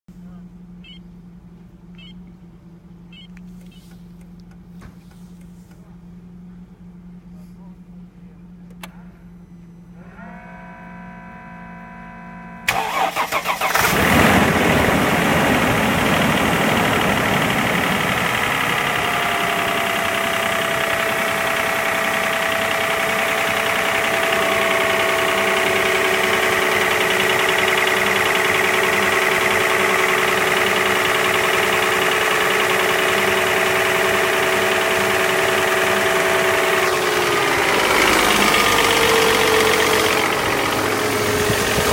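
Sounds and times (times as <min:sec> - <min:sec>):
car engine idling: 0:00.1 - 0:41.9
engine starter cranking: 0:12.7 - 0:41.9.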